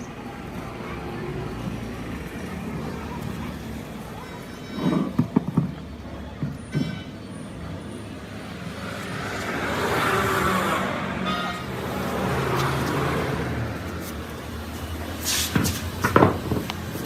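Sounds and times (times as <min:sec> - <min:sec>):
road noise of passing traffic: 0:00.0 - 0:17.0.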